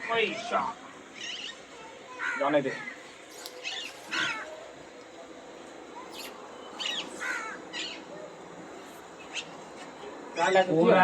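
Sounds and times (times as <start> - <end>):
faint steady background noise: 0.0 - 11.0
short bird calls: 2.2 - 4.7, 6.0 - 10.0.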